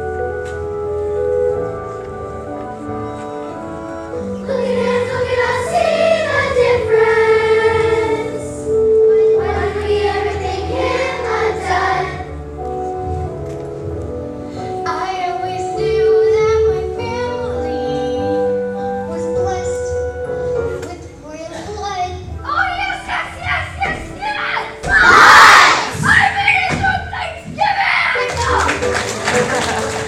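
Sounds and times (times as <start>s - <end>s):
keyboard accompaniment: 0.0s - 26.0s, 27.9s - 30.0s
children singing: 4.3s - 12.3s.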